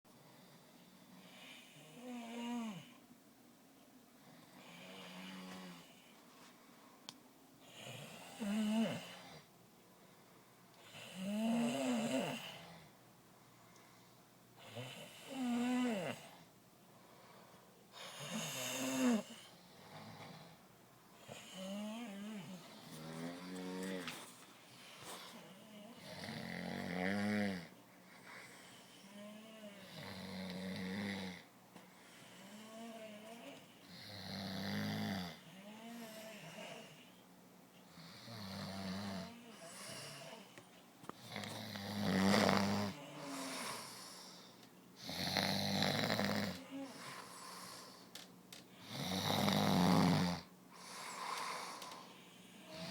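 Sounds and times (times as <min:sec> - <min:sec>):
person snoring: 0:07.7 - 0:09.4, 0:11.0 - 0:12.7, 0:14.7 - 0:16.3, 0:18.0 - 0:20.3, 0:21.3 - 0:24.3, 0:25.3 - 0:27.7, 0:41.3 - 0:44.4, 0:48.8 - 0:52.0
soft breath: 0:21.2 - 0:26.0, 0:27.9 - 0:29.9, 0:43.0 - 0:44.7, 0:46.7 - 0:48.1.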